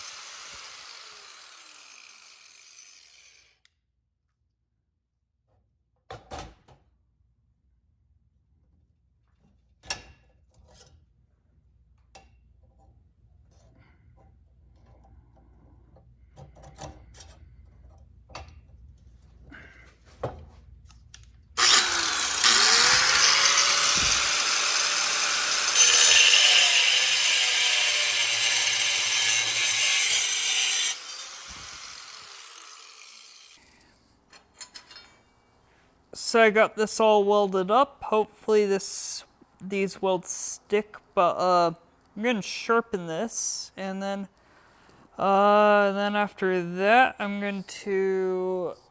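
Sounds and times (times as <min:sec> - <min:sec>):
power tool cutting metal: 0:00.0 - 0:03.6, 0:21.6 - 0:33.6.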